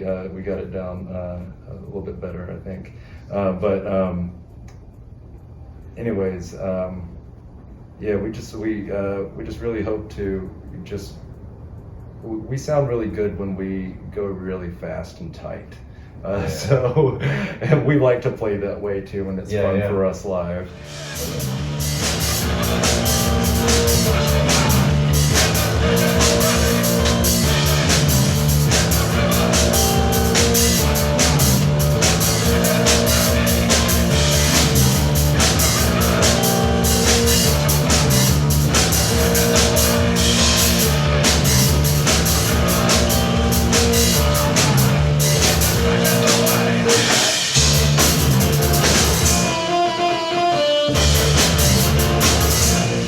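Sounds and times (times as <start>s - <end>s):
held keyboard notes: 20.7s - 53.0s
fast loud rock drums: 20.9s - 49.6s, 50.9s - 53.0s.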